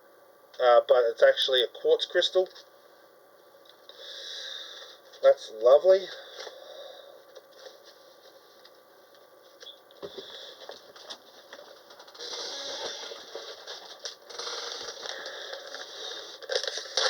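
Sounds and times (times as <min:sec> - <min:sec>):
packaging rustling and crinkling: 0:10.6 - 0:17.0.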